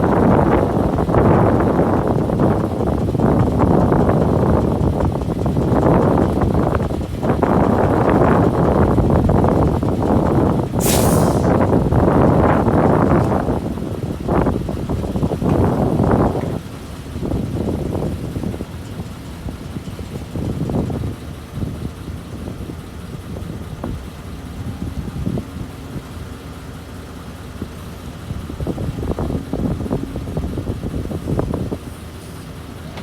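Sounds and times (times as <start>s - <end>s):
heavy diesel engine running: 0.0s - 33.0s.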